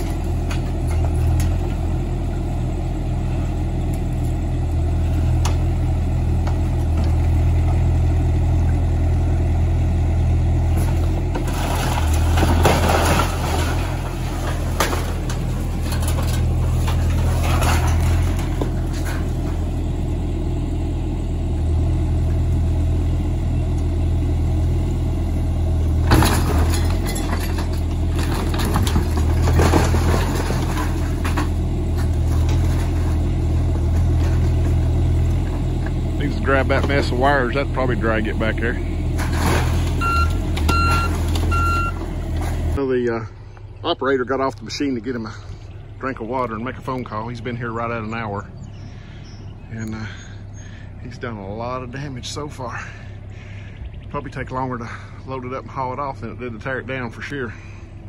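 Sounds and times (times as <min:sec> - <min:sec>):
demolition machine engine: 0:00.0 - 0:58.0
wood crashing and cracking: 0:10.6 - 0:19.6, 0:25.9 - 0:36.0, 0:39.1 - 0:42.8.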